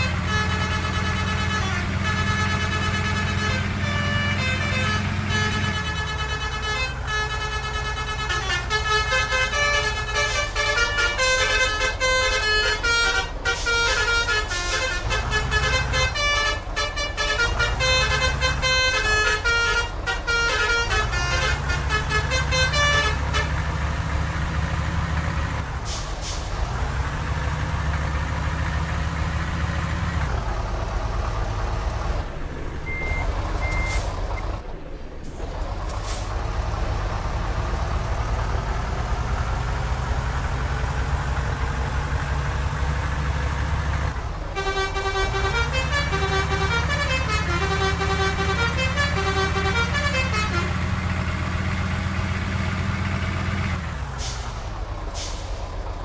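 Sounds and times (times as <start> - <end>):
bus horn playing multi-note melody: 0.0 - 25.6, 39.2 - 54.4
heavy bus engine rumble: 0.0 - 56.0
short air hisses: 55.2 - 55.7.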